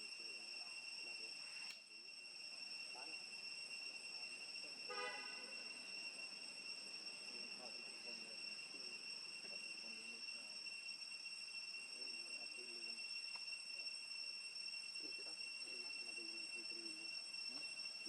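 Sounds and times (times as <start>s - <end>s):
insect chorus: 0.0s - 18.0s
faint click: 1.6s - 1.8s
short horn toot: 4.9s - 5.6s.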